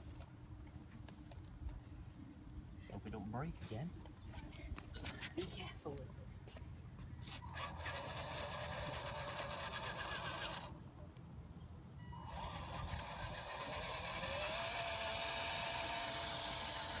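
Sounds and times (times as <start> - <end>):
small electric motor whining: 7.3 - 10.8, 12.1 - 17.0.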